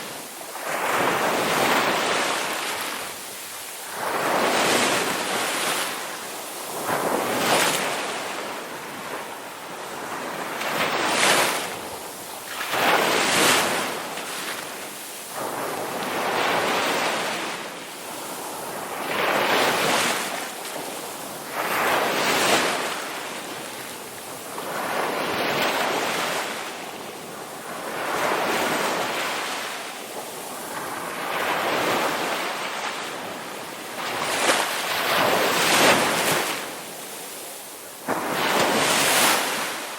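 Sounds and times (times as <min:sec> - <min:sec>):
sea waves crashing: 0:00.0 - 0:09.2, 0:27.7 - 0:39.9.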